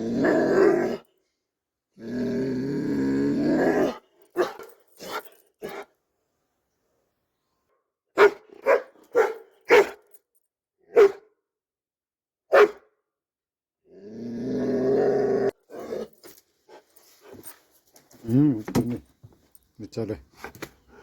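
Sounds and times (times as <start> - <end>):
dog barking: 3.8 - 5.9, 8.1 - 10.1, 10.9 - 11.3, 12.5 - 12.9.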